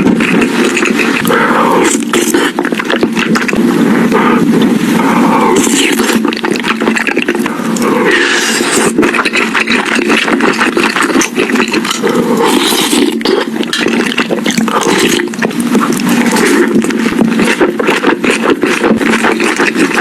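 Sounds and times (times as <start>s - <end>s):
chewing crispy fried chicken: 0.0s - 4.4s, 5.0s - 20.0s.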